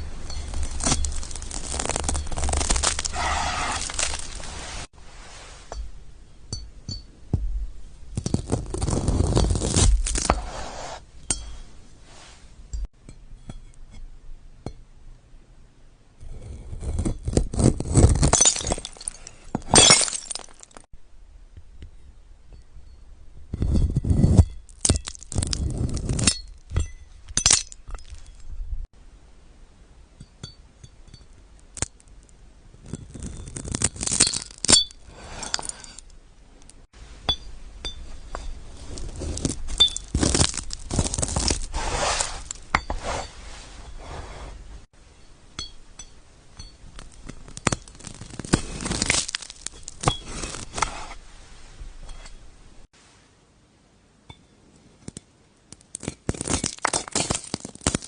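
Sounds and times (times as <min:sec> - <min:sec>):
crisp food crunching: 0:00.5 - 0:04.5, 0:38.8 - 0:41.8, 0:47.1 - 0:50.8.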